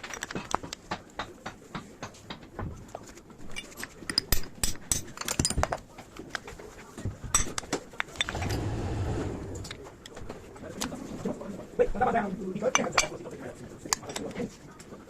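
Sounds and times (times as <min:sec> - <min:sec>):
metal parts and tools clinking: 0:03.5 - 0:05.8.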